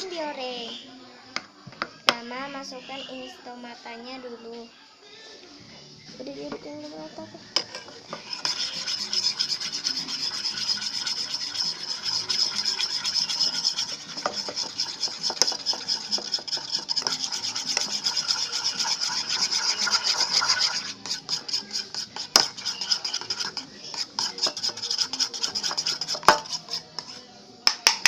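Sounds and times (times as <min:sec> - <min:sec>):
stirrer scraping plastic container: 0:07.6 - 0:27.2.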